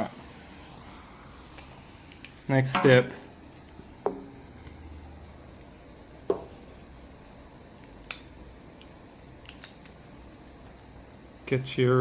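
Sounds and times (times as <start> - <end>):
high-pitched whine: 0.0 - 7.8.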